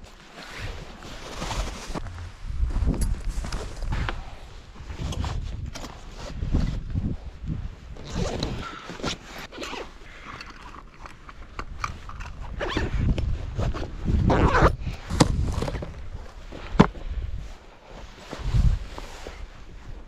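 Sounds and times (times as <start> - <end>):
gear rustling and scraping: 0.0 - 7.0, 7.9 - 16.8.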